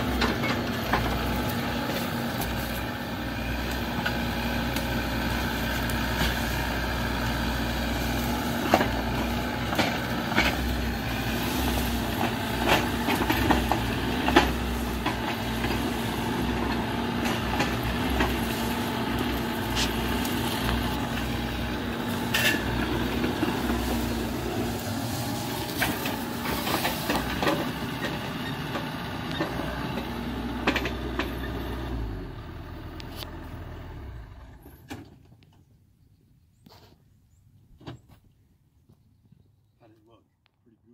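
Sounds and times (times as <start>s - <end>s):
diesel engine running: 0.0s - 35.4s
metal clanks and knocks: 12.1s - 18.5s.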